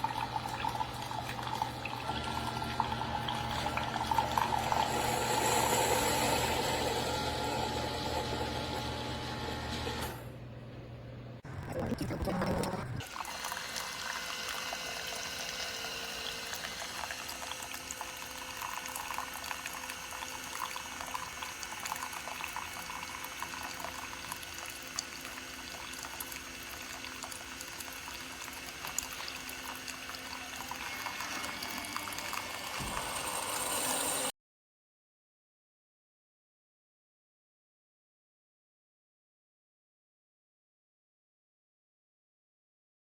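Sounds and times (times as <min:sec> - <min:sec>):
coffee streaming into cup: 0:00.0 - 0:10.2, 0:11.7 - 0:34.3
faint machine hum: 0:00.0 - 0:34.3.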